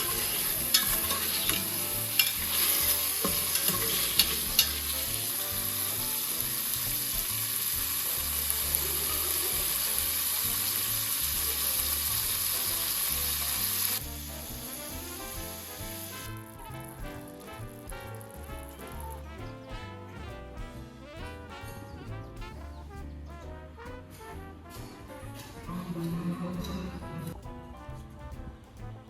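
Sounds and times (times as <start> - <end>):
food sizzling in hot oil: 0.0 - 16.3
faint music: 0.0 - 29.0.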